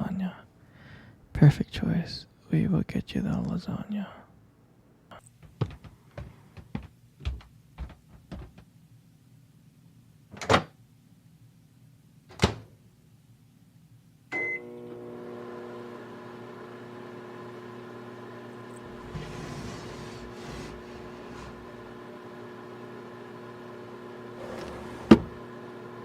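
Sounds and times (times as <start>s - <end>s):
microwave oven humming: 14.3s - 26.0s.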